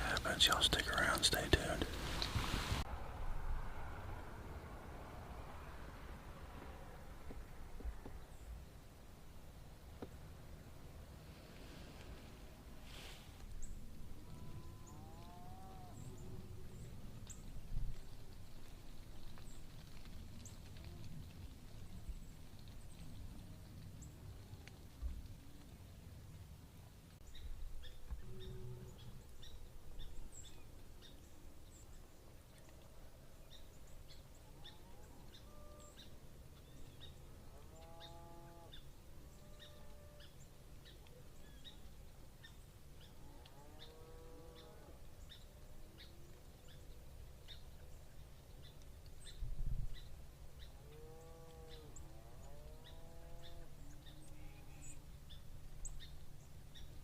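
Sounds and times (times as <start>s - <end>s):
distant cattle mooing: 37.4s - 38.8s, 50.8s - 55.0s.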